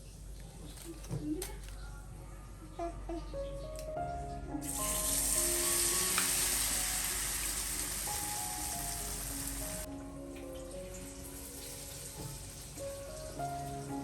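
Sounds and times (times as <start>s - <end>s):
food sizzling in hot oil: 4.6s - 9.9s, 10.5s - 14.0s.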